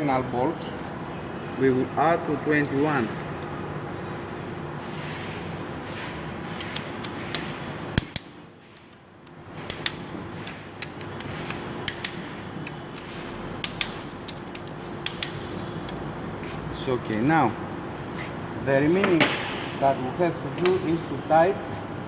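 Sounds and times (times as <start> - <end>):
torque wrench clicks: 8.0 - 16.0.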